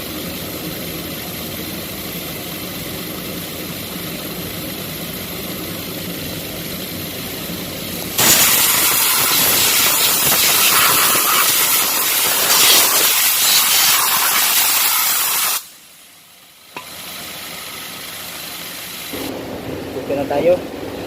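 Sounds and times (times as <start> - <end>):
pressurised spray hissing: 8.2 - 15.8.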